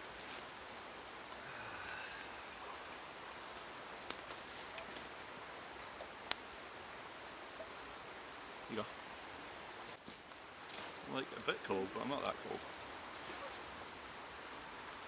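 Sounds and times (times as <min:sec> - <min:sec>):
outdoor background noise: 0:00.0 - 0:15.0
small bird calling: 0:04.5 - 0:05.2.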